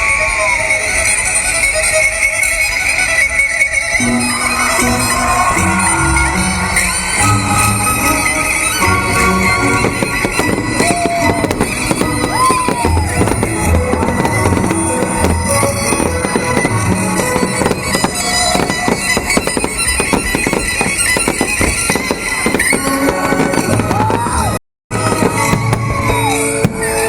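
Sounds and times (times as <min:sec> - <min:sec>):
fireworks bursting and crackling: 0:03.6 - 0:27.0
music with gliding melody and drums: 0:04.0 - 0:24.3.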